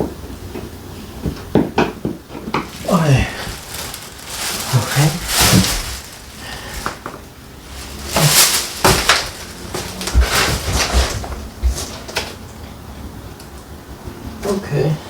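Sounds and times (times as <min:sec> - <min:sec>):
low thuds: 0:02.6 - 0:12.0
metal scrapes and rustles: 0:02.6 - 0:12.4.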